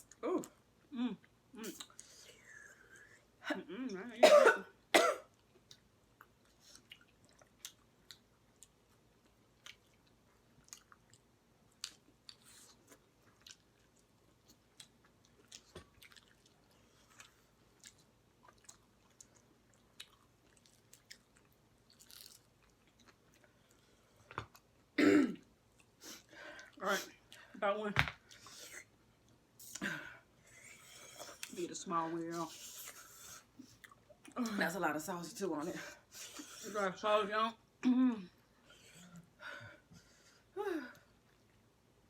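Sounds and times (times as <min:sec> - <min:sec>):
chewing and lip-smacking: 0:05.4 - 0:24.7, 0:33.6 - 0:34.4.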